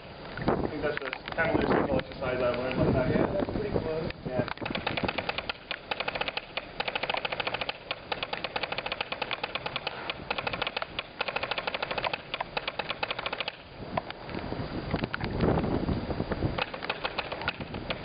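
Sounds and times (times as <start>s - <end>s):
wind noise: 0.0s - 18.0s
fast snare drum rudiments: 4.6s - 13.6s.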